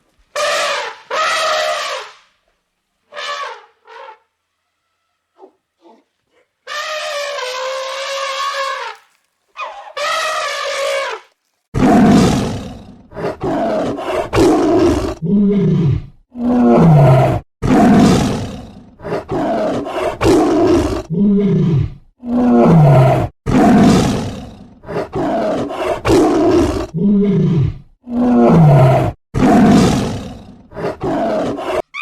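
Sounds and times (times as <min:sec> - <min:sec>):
long steady calls: 0:03.0 - 0:11.6
big cat roaring: 0:11.8 - 0:31.8.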